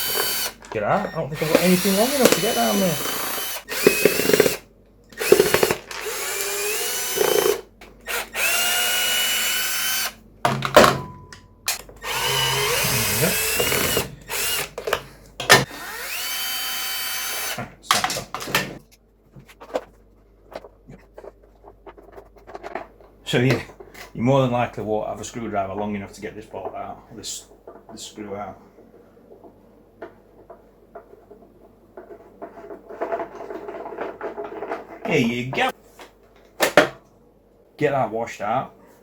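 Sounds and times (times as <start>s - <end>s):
cordless drill whirring: 0.0s - 0.6s, 1.4s - 10.2s, 12.0s - 17.6s.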